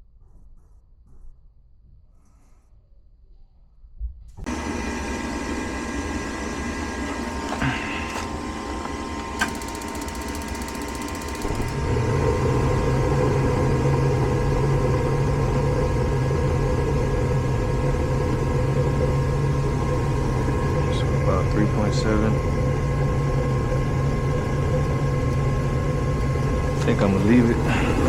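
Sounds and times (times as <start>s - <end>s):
furnace fan motor running: 4.5s - 28.0s
fast faint ticking: 9.5s - 11.8s.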